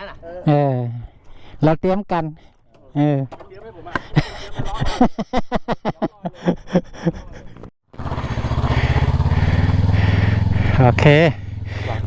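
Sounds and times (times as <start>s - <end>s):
motorcycle engine running: 8.0s - 12.0s.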